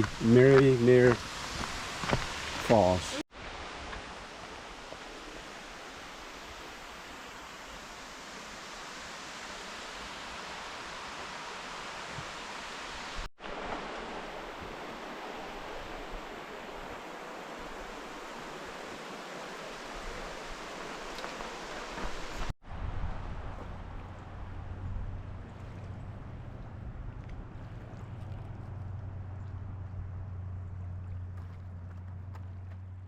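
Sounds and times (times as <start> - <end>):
waterfall rushing: 0.0 - 22.5.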